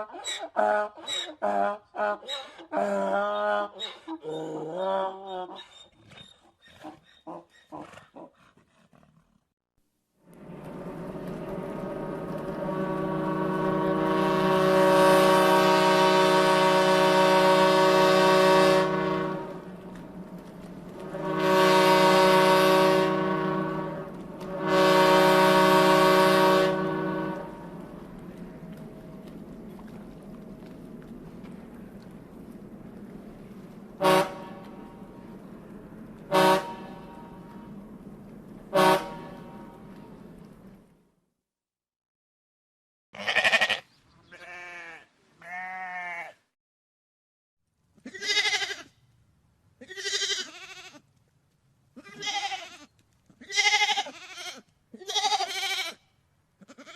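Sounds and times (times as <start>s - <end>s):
background rumble: 10.2s - 41.1s
long steady horn blast: 10.3s - 31.0s, 33.8s - 38.0s, 38.6s - 40.3s.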